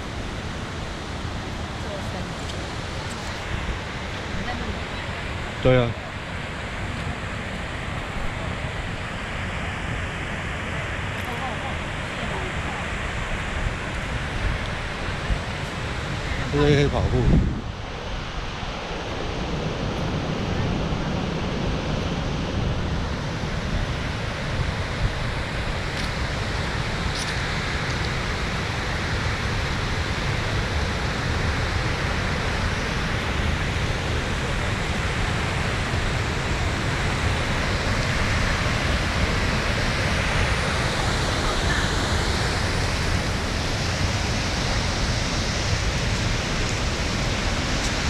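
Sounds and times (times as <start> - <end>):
rushing flowing water: 0.0 - 48.0.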